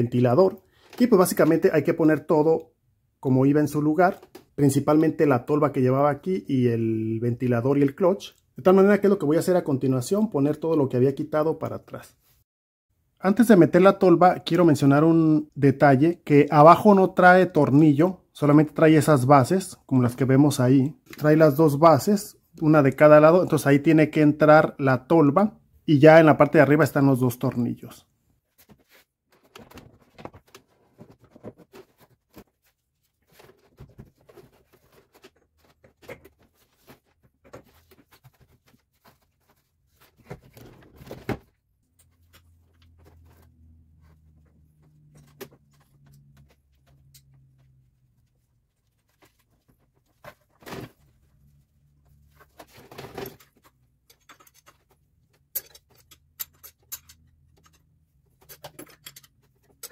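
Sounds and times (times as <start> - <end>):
hand tools and parts clicking: 53.1 - 59.9.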